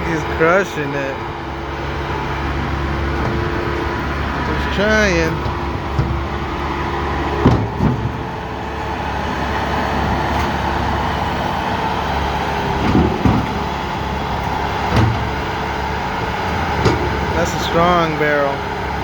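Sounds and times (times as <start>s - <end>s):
skid steer engine under load: 0.0s - 19.0s
knocks on metal drum: 7.4s - 8.3s.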